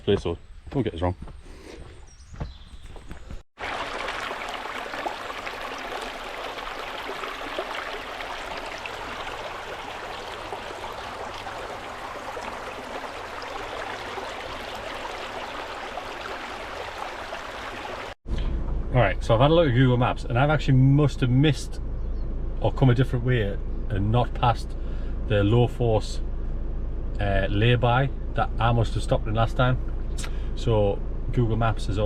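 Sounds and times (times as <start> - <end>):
waterfall rushing: 3.6 - 18.2.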